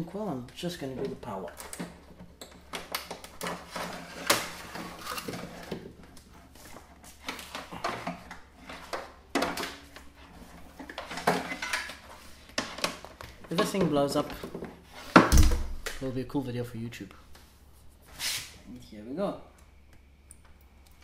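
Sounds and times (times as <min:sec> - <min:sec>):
tools and wiring clattering: 0:00.0 - 0:15.5.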